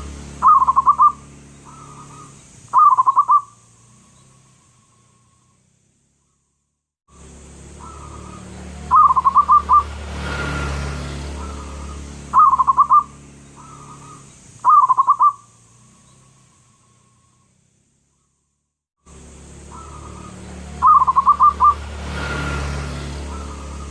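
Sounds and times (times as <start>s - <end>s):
dove cooing: 0.0s - 3.6s, 7.8s - 10.0s, 11.3s - 15.4s, 19.6s - 21.9s, 23.1s - 23.9s.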